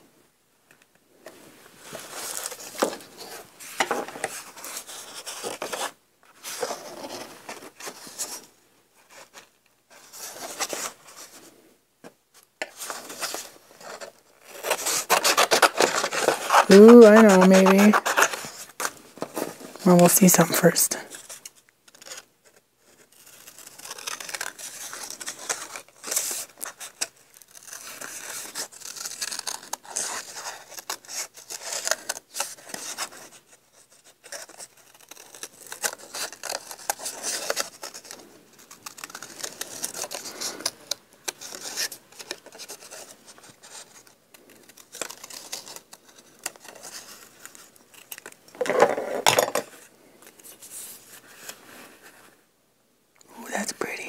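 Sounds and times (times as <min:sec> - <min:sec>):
paper rustle: 0:01.2 - 0:52.4
scissors cutting paper: 0:13.8 - 0:18.6, 0:23.2 - 0:32.9, 0:34.3 - 0:44.1.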